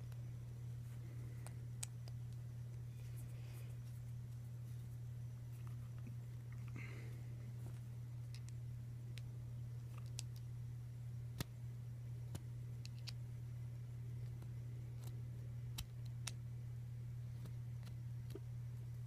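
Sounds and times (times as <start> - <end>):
low hum: 0.0 - 19.0
small clicks and taps: 9.9 - 10.5, 12.3 - 13.2.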